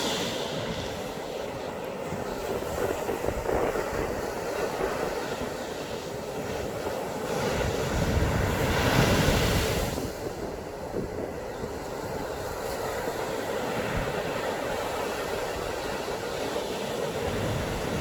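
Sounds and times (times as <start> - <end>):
waves breaking on beach: 0.0 - 18.0.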